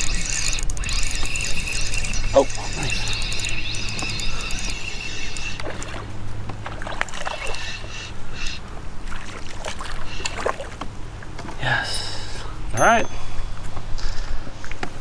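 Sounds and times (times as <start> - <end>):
steady high whine: 0.0 - 9.0
water splashing: 0.0 - 11.4.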